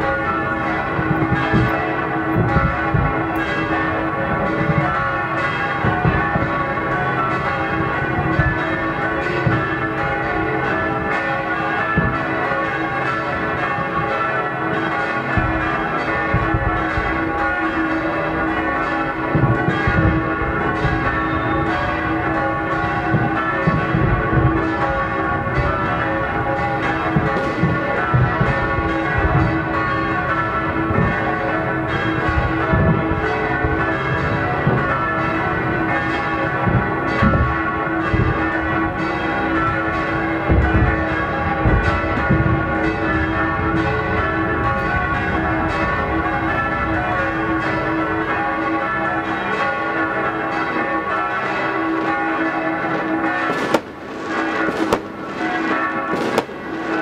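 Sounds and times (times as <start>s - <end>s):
church bells pealing: 0.0s - 57.0s
low booms of fireworks: 0.8s - 5.0s, 5.8s - 6.8s, 9.4s - 11.1s, 12.0s - 12.4s, 15.3s - 18.4s, 19.0s - 48.1s, 52.9s - 57.0s.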